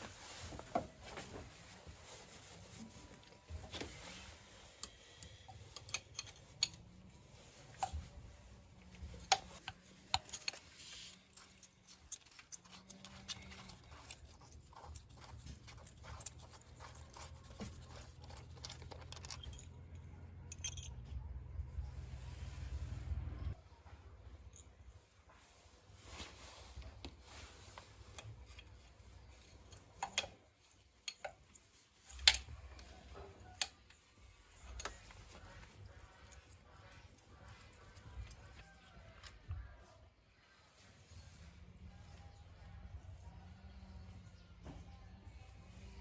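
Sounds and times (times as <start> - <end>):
low steady hum: 0.2 - 25.4.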